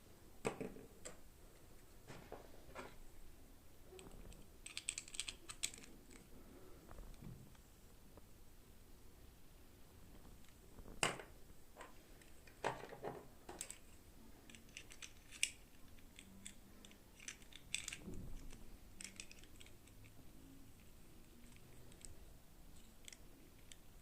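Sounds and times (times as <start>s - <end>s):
plastic toy pieces clicking: 4.6s - 6.3s, 13.6s - 20.2s.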